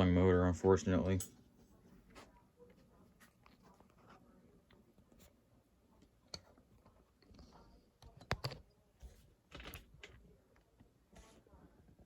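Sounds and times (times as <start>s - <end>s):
faint clicks and handling noises: 0.6s - 12.0s.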